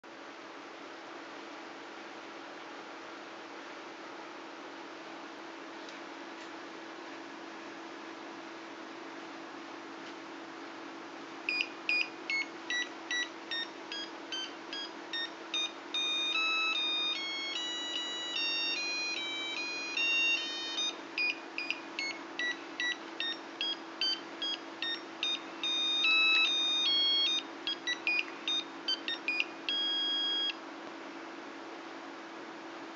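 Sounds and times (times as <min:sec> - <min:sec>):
faint steady hum: 0:00.1 - 0:32.9
alarm clock electronic beep tune: 0:11.5 - 0:30.6.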